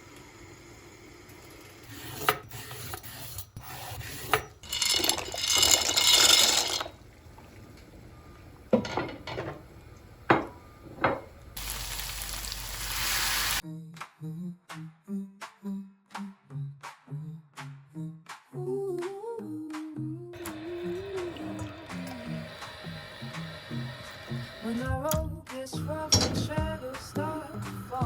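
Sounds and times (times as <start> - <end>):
utensils scraping a pan: 1.9 - 6.9.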